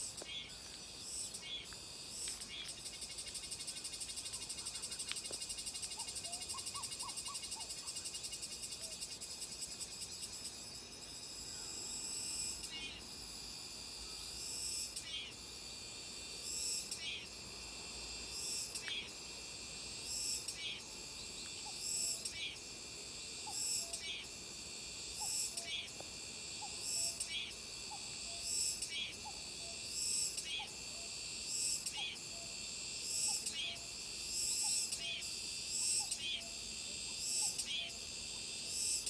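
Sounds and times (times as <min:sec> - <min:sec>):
cicadas buzzing: 0:00.0 - 0:39.0.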